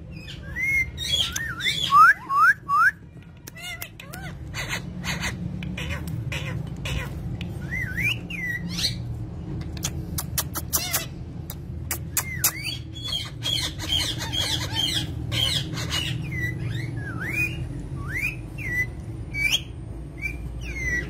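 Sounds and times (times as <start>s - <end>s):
parrot squawking and whistling: 0.1s - 3.0s, 3.6s - 9.0s, 10.1s - 11.2s, 11.8s - 21.0s.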